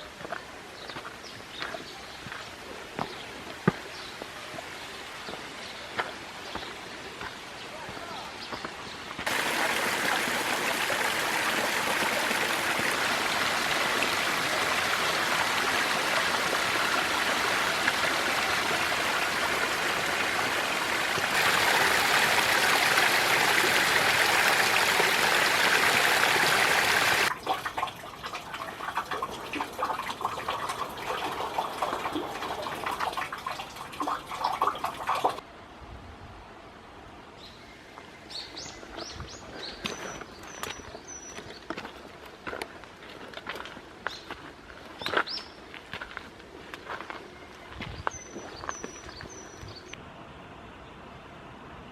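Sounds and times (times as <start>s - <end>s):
stream water rushing: 9.2s - 35.4s
water gurgling trickle: 9.3s - 35.4s.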